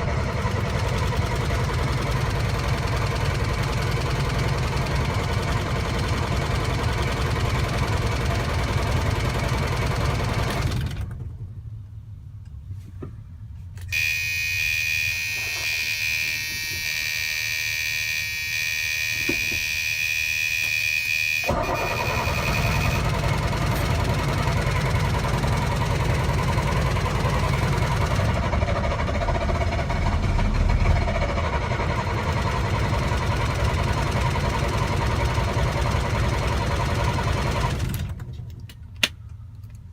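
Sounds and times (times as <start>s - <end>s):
diesel truck engine running: 0.0s - 12.3s, 21.1s - 38.7s
high-pitched warning buzzer: 13.9s - 23.1s.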